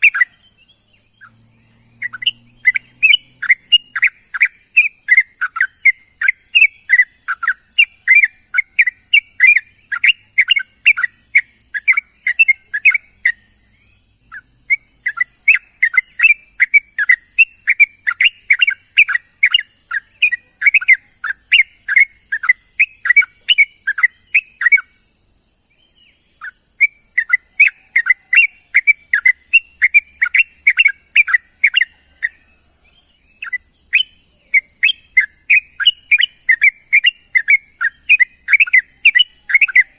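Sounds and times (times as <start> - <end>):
steady high hiss: 0.0 - 20.0
bulbul calling: 0.0 - 25.0, 25.8 - 39.9.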